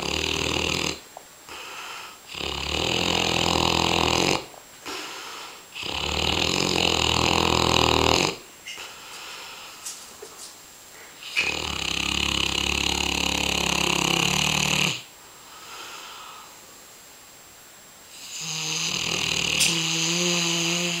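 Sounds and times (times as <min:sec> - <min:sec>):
dog snoring: 0:00.0 - 0:01.0, 0:02.3 - 0:05.0, 0:05.7 - 0:08.4, 0:11.2 - 0:15.1, 0:18.1 - 0:21.0.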